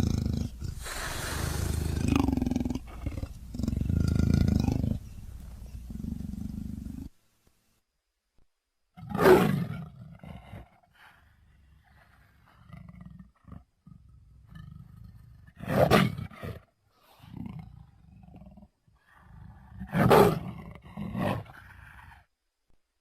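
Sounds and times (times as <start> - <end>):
creature roaring: 0.0 - 5.0.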